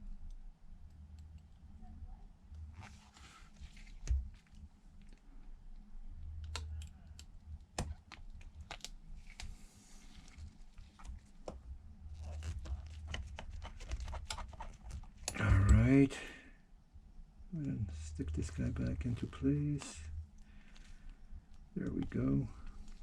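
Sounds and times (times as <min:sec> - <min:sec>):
steady low hum: 0:00.0 - 0:23.0
rustling: 0:12.1 - 0:15.3.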